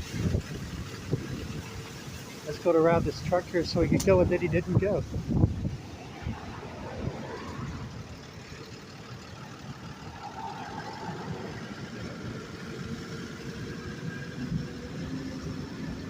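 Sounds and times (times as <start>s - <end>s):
wind buffeting microphone: 0.0s - 2.2s, 3.0s - 8.3s
truck engine idling: 0.0s - 16.0s.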